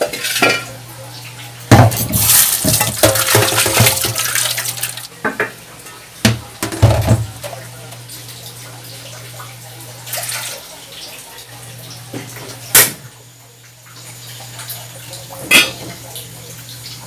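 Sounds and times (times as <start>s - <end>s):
pots and utensils clattering: 0.0s - 0.8s, 1.7s - 7.6s, 10.1s - 10.7s, 12.1s - 13.1s, 15.3s - 16.2s
water running from tap: 0.0s - 17.0s.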